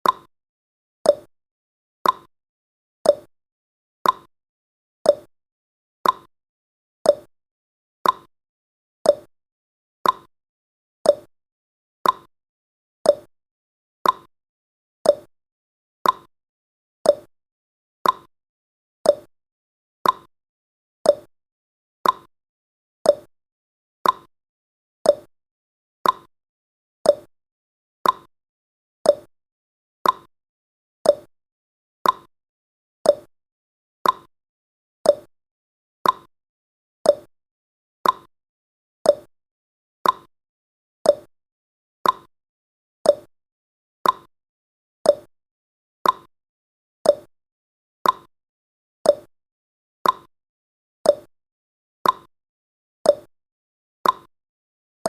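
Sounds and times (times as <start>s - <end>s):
clock ticking: 18.0s - 18.3s, 34.0s - 34.3s, 42.0s - 42.3s, 50.0s - 50.3s.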